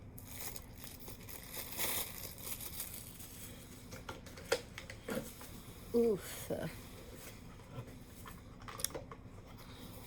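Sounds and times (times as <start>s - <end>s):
plastic packaging crinkling: 0.2s - 3.7s.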